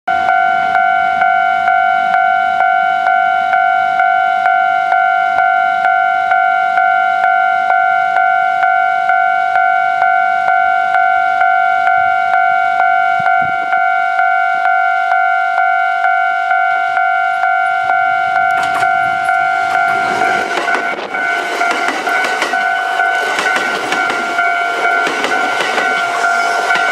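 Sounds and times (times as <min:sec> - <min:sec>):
level crossing warning bell: 0:00.1 - 0:26.9
train clattering: 0:17.4 - 0:26.9.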